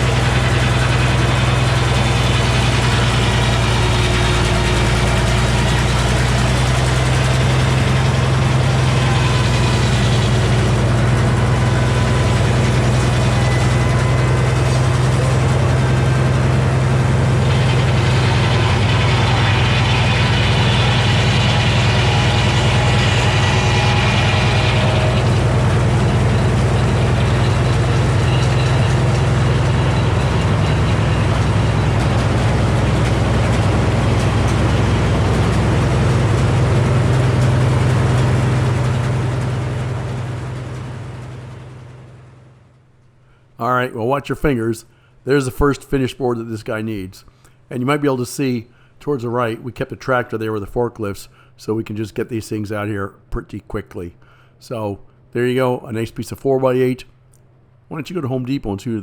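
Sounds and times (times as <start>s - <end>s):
high whir: 0.0s - 39.5s
sawmill engine humming: 0.0s - 42.9s.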